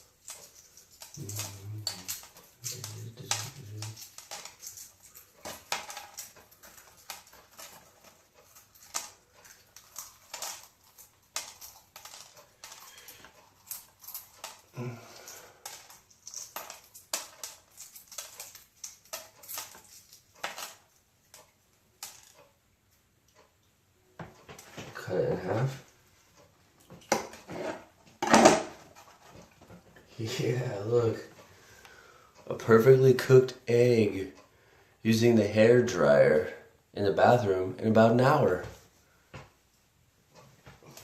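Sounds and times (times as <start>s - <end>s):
egg shell cracking and peeling: 0.0s - 21.4s.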